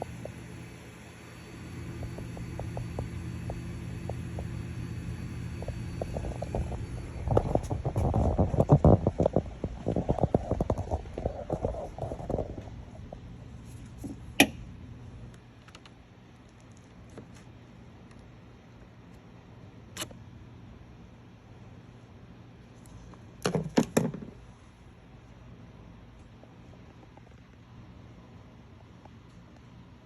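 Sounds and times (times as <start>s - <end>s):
fuel pump electric hum: 0.0s - 30.0s.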